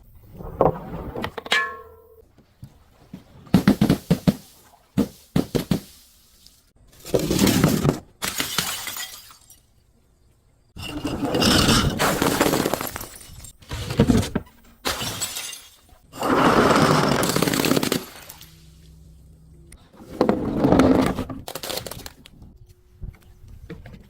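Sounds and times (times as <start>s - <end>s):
glass breaking and shattering: 8.2s - 9.7s, 11.7s - 13.6s, 14.8s - 16.0s.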